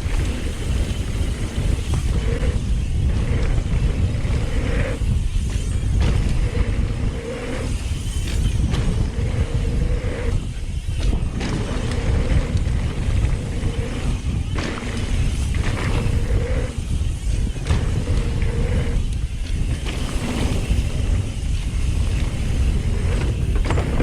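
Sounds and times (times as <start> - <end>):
tyres rolling over dirt: 0.0 - 24.0
wind rumble on microphone: 0.0 - 24.0.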